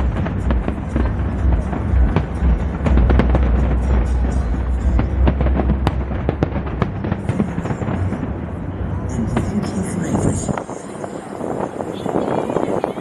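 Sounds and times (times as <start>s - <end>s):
music playing: 0.0s - 10.6s
low booming rumble: 0.0s - 12.4s
fireworks cracking: 0.0s - 13.0s.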